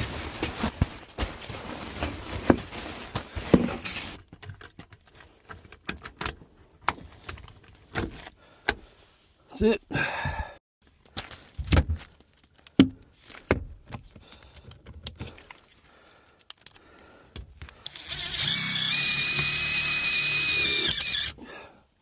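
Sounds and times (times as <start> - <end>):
knocks and clicks of handling: 11.7 - 15.6
power drill whining: 17.8 - 21.4.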